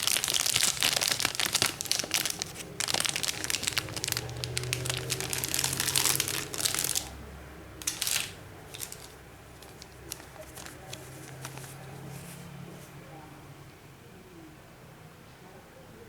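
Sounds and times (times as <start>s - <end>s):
packaging crinkling and rustling: 0.0s - 7.2s, 7.8s - 12.5s.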